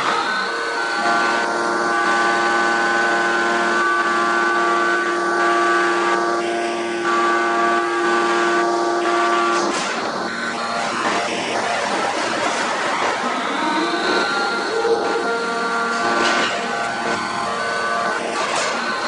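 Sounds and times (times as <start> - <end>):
hydraulic press whine: 0.0 - 19.0.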